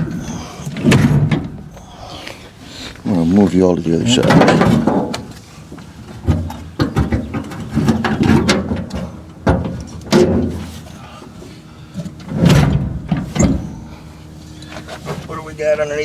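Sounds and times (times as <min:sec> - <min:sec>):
metal parts knocking and rattling: 0:04.1 - 0:05.3.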